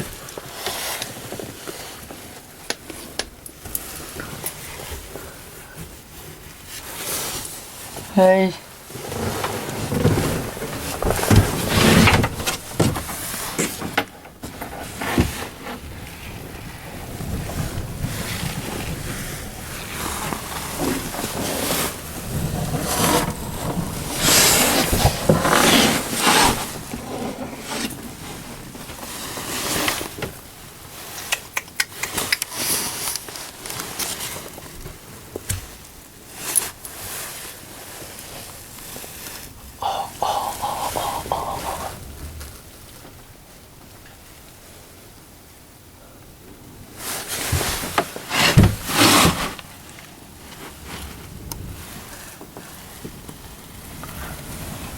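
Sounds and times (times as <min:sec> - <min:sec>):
scraping and knocking: 0:09.0 - 0:15.8, 0:17.4 - 0:29.0
wind on microphone: 0:15.9 - 0:28.9, 0:39.6 - 0:43.0.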